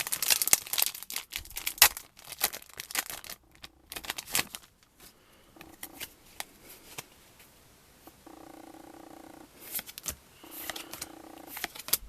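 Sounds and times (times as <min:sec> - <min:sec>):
cards and foil rustling: 0:00.0 - 0:07.5, 0:09.6 - 0:12.0
scattered clicks: 0:08.1 - 0:12.0.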